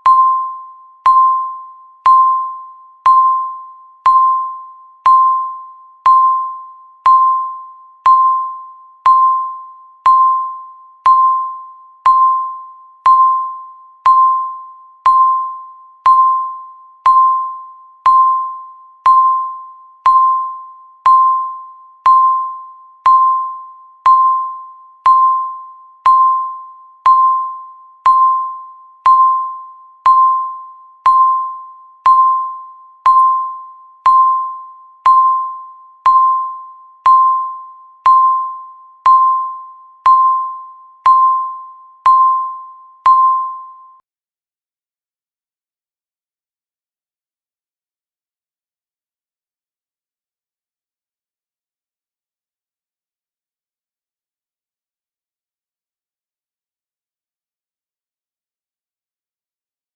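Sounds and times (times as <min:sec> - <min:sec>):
countdown timer beeping: 0:00.0 - 0:44.0.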